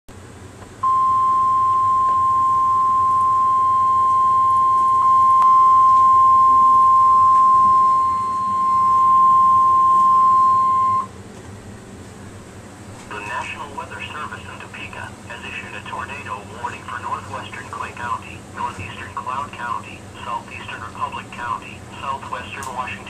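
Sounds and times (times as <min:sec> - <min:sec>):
high steady alarm beep: 0:00.8 - 0:11.1.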